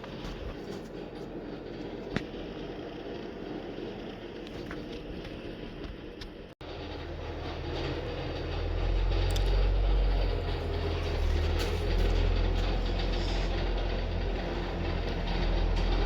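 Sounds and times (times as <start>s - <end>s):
diesel locomotive rumbling: 0.0s - 16.0s
mechanical rattling and clicking: 3.8s - 16.0s.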